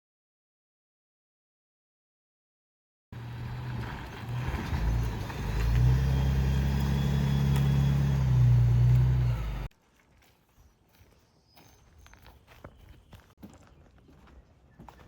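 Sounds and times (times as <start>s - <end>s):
vehicle engine humming: 3.2s - 9.7s.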